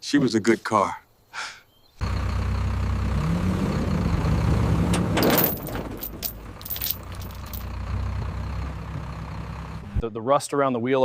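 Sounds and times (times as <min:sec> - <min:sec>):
vehicle engine rumbling: 0:02.0 - 0:10.0
light metallic clinks and rattles: 0:05.2 - 0:07.7.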